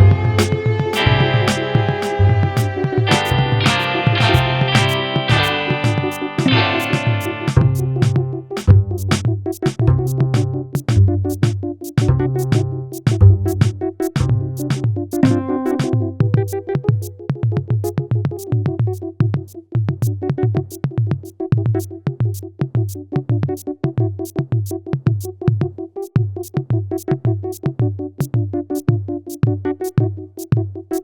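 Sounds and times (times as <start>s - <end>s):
low bass pulse: 0.0s - 1.5s, 2.2s - 5.9s, 7.6s - 9.1s
drum machine beat: 0.0s - 31.0s
held synthesizer note: 15.2s - 16.7s.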